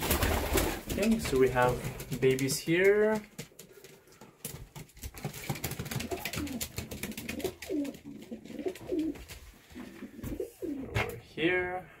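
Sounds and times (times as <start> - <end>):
pigeons cooing: 5.9 - 11.1.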